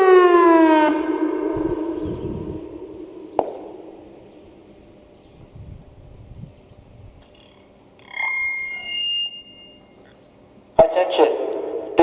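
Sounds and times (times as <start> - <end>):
electronic siren tone: 0.0 - 4.2, 8.0 - 10.0
loud electronic alert tone: 8.1 - 10.0.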